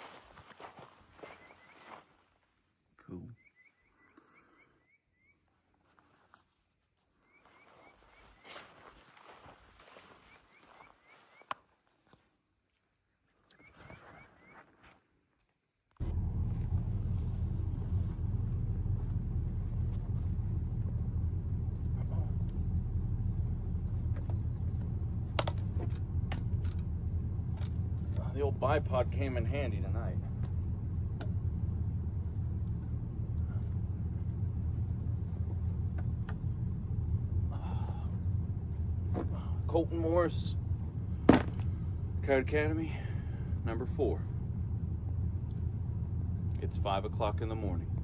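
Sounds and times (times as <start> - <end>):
crickets chirping: 0.0 - 48.0
low rumble: 16.0 - 48.0.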